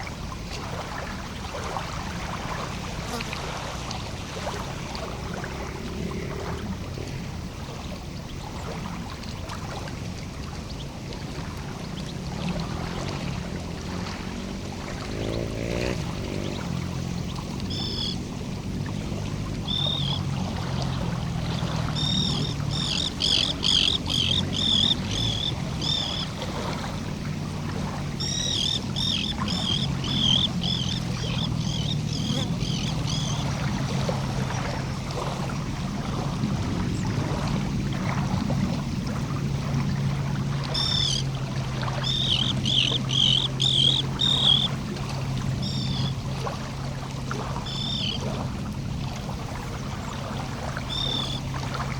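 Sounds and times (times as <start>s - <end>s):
small bird chirping: 15.2s - 18.2s, 19.6s - 20.3s, 21.9s - 26.4s, 28.2s - 33.5s, 40.8s - 41.2s, 42.0s - 44.7s, 47.6s - 48.2s, 50.9s - 51.4s.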